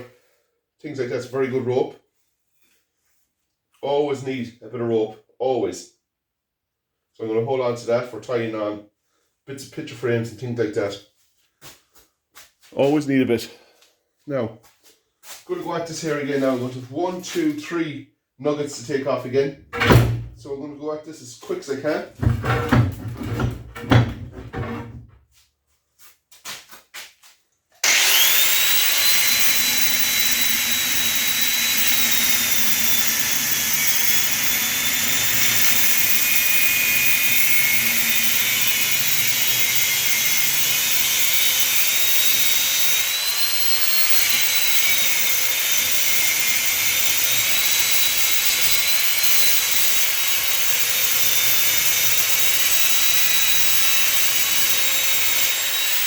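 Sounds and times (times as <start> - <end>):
power tool cutting metal: 19.8 - 20.5, 21.9 - 25.1, 27.8 - 56.0.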